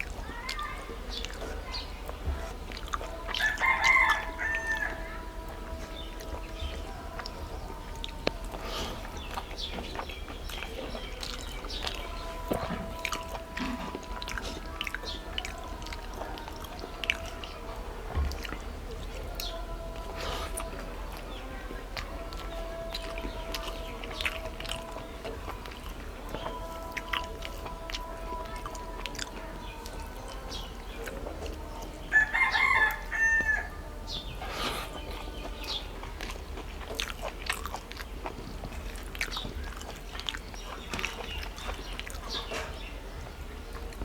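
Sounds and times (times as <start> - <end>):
eating clicks and smacks: 0.0 - 44.0
rooster crowing: 3.1 - 7.1, 31.6 - 34.4.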